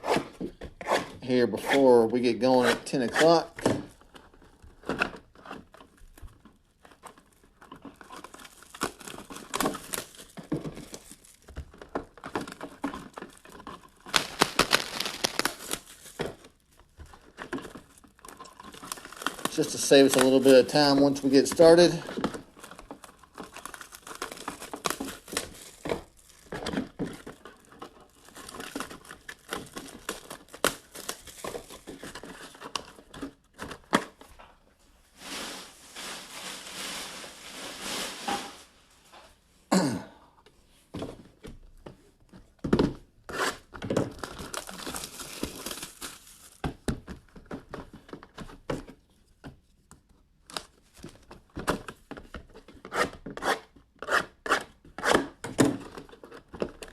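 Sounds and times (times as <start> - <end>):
plastic shrink wrap tearing: 6.8 - 33.1, 35.2 - 38.9, 43.3 - 46.6.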